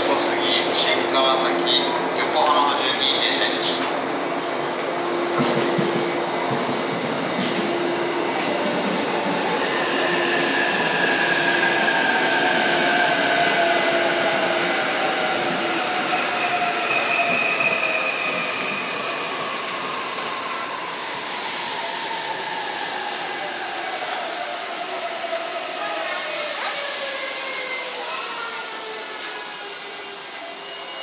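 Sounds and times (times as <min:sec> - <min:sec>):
electric train rolling rumble: 0:00.0 - 0:31.0.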